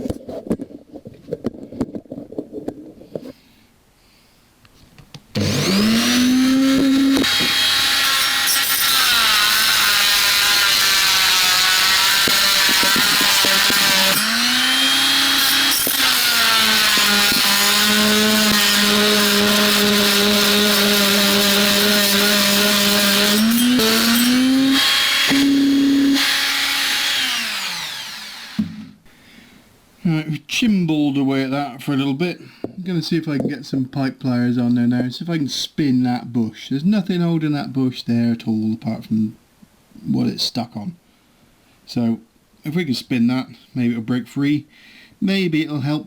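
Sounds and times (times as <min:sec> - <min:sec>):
rotary tool motor whine: 0:05.4 - 0:28.9.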